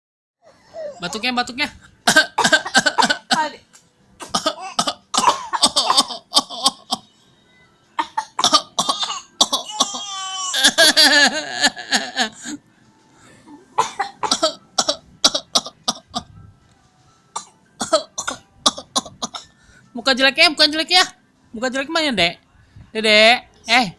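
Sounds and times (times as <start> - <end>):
child fake coughing: 2.1 - 3.6, 4.2 - 7.1, 8.0 - 10.5, 13.8 - 16.3, 17.4 - 19.5.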